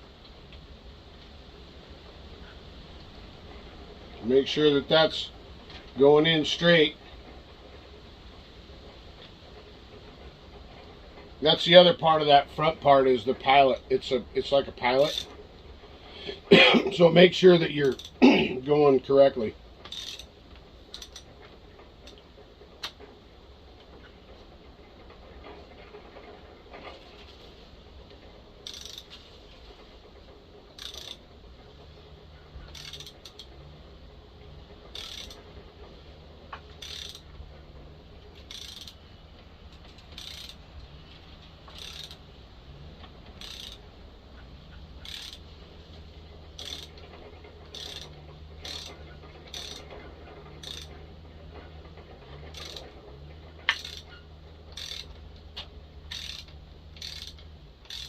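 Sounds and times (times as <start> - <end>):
low steady hum: 0.0 - 58.0
ratchet handle clicking: 14.8 - 15.4, 17.8 - 18.2, 19.8 - 20.3, 20.9 - 22.2, 28.6 - 29.2, 30.7 - 31.9, 32.6 - 33.8, 34.8 - 35.9, 36.5 - 37.4, 38.3 - 39.0, 39.7 - 40.9, 41.6 - 42.3, 43.2 - 43.9, 44.7 - 58.0.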